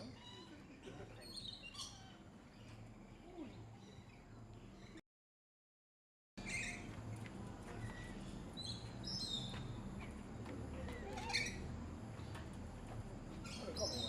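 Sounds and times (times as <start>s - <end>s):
parrots calling: 10.8s - 11.7s.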